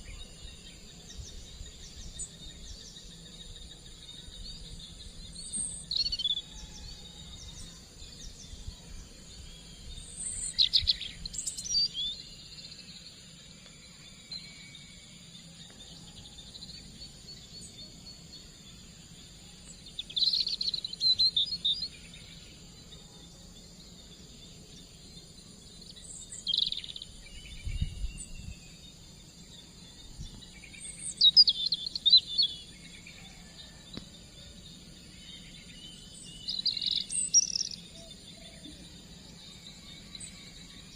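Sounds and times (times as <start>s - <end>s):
insects buzzing: 0.0s - 40.9s.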